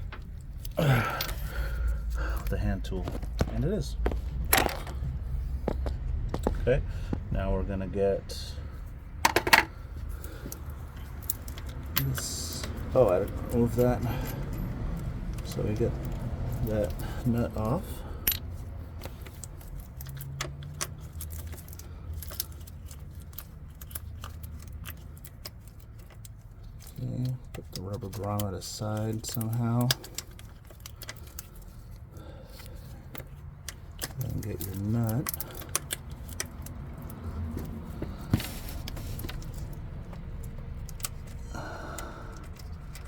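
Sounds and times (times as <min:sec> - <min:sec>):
low background rumble: 0:00.0 - 0:43.0
small metallic clicks and clinks: 0:09.2 - 0:43.0.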